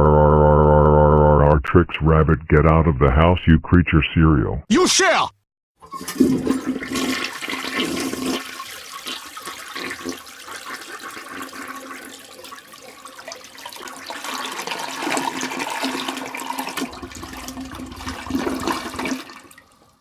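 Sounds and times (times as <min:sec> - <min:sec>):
toilet flushing: 0:05.8 - 0:20.0.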